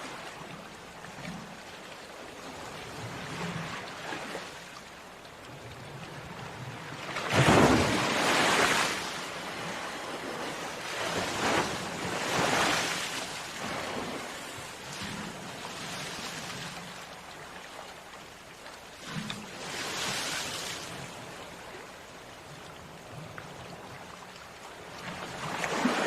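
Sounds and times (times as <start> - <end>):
ocean waves breaking: 6.8 - 17.2, 19.0 - 22.0, 24.9 - 26.0.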